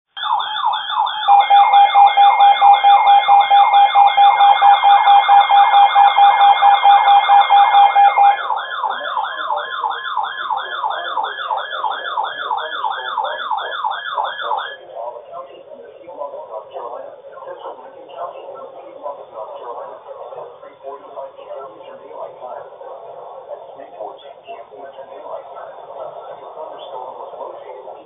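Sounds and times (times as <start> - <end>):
electronic siren yelping: 0.1 - 14.9
steady tone: 1.1 - 10.0.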